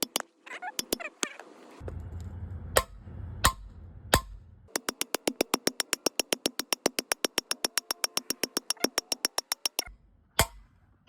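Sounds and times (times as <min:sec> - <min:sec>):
drum machine hi-hat ticks: 0:00.0 - 0:00.2, 0:04.2 - 0:09.9
low bass: 0:01.8 - 0:04.7.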